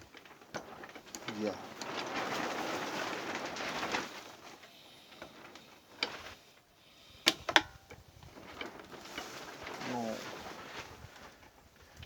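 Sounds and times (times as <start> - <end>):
click: 7.3 - 7.7.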